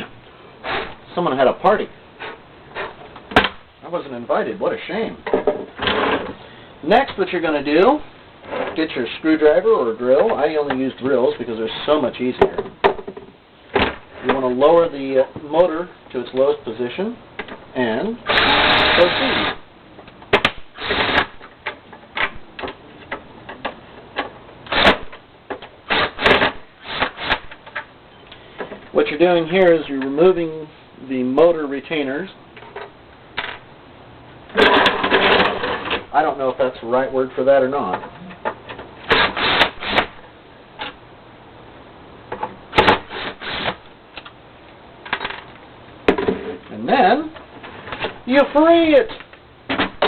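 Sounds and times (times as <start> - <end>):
plastic parts clattering: 34.5 - 36.1.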